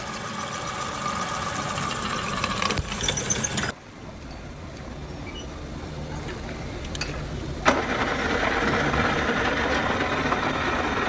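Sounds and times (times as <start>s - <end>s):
lathe running with whine: 7.7s - 11.0s.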